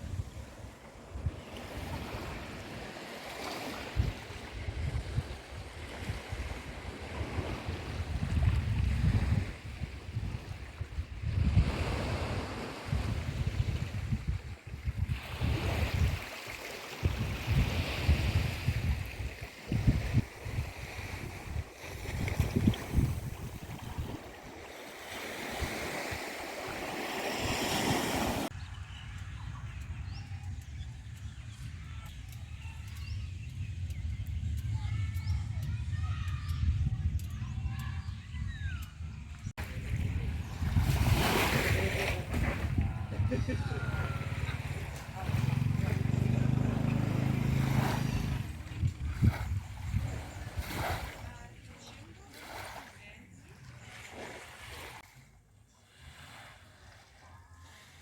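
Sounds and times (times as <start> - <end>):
wind buffeting microphone: 0.0 - 2.9, 3.8 - 16.3, 17.0 - 24.7, 27.4 - 51.8
sea waves washing in: 0.0 - 9.7, 15.0 - 28.5, 39.6 - 51.4.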